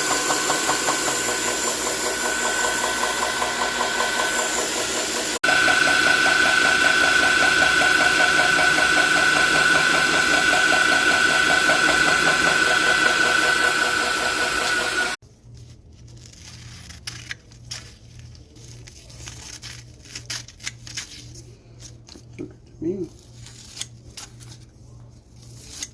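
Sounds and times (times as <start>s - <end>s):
sharpening machine motor whining: 0.0s - 15.2s.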